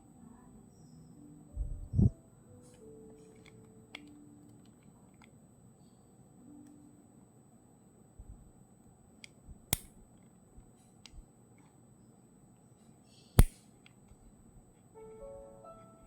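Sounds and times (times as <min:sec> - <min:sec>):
background hiss: 0:12.6 - 0:16.0
loud snap: 0:13.4 - 0:13.6
sharp clicks: 0:13.4 - 0:13.6
background music: 0:15.0 - 0:16.0.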